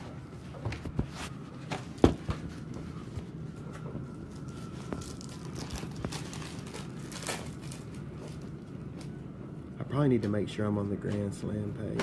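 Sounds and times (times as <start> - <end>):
steady low hum: 0.0 - 12.0
crinkling: 3.7 - 9.2.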